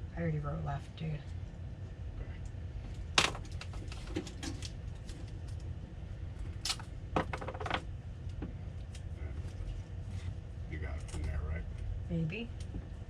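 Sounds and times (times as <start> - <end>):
steady low hum: 0.0 - 13.0
wire handling clicks and rustles: 2.9 - 5.7, 6.4 - 9.6.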